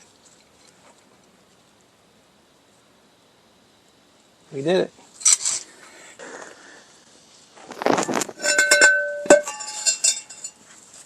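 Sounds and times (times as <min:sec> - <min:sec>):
metal brake parts clinking: 0:08.1 - 0:10.7.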